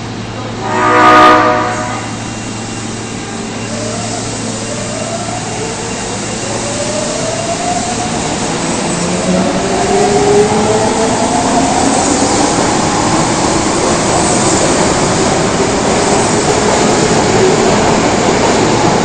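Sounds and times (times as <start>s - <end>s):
train horn: 0.4s - 2.4s.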